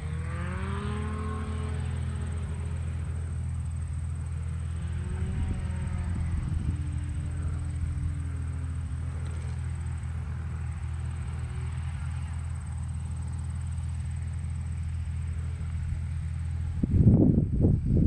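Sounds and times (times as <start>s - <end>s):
distant light aircraft engine: 0.0s - 18.0s
wind rumble on microphone: 4.6s - 10.2s, 15.4s - 18.0s.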